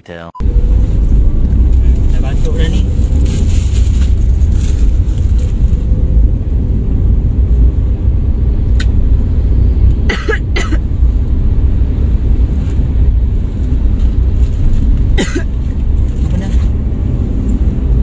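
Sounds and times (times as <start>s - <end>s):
car interior rumble: 0.4s - 18.0s
woman coughing: 10.1s - 10.8s, 15.2s - 15.5s.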